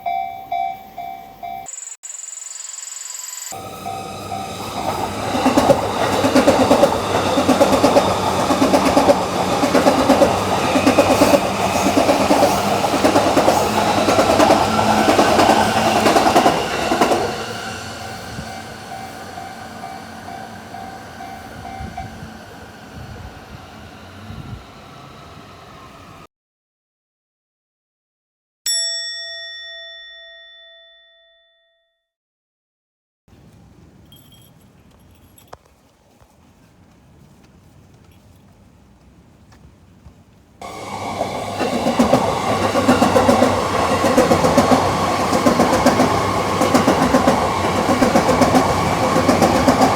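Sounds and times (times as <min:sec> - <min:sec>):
crossing warning bell ringing: 0:00.0 - 0:02.3, 0:03.1 - 0:22.6, 0:28.7 - 0:31.8, 0:34.1 - 0:35.6
train wheels clattering over rail joints: 0:04.4 - 0:17.4, 0:40.6 - 0:49.9.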